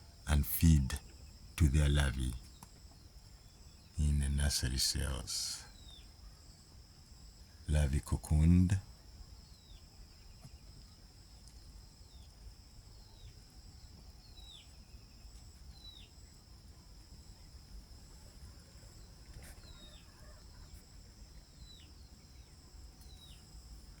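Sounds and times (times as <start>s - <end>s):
bird chirping: 0.2s - 6.6s.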